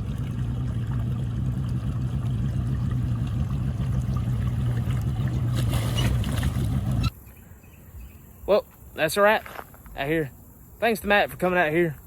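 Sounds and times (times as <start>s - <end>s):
rush of water and air: 0.0s - 7.0s
boat motor humming: 0.0s - 7.2s.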